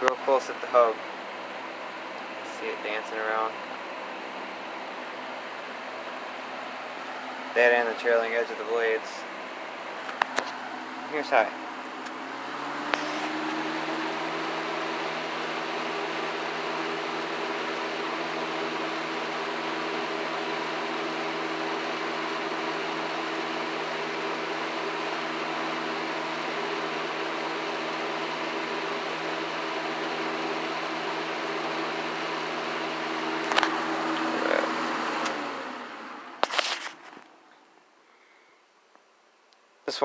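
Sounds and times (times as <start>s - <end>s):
fan motor hum: 0.0s - 37.7s
box fan air rushing: 5.1s - 16.9s, 33.2s - 37.3s.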